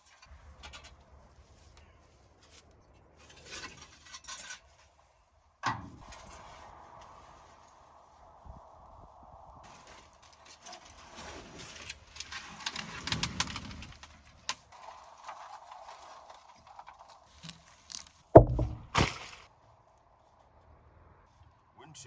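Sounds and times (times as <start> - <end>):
rustling: 9.7 - 19.5
heavy knocks: 18.4 - 19.1.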